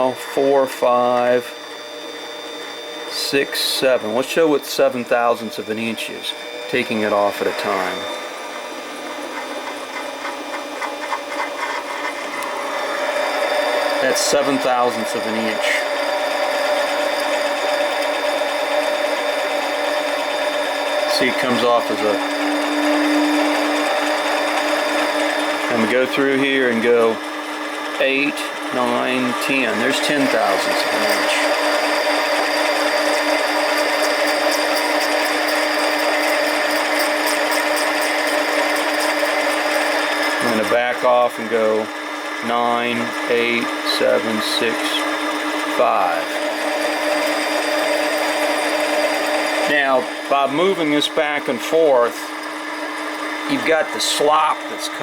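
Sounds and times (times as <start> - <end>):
lathe motor and gear hum: 0.0 - 55.0.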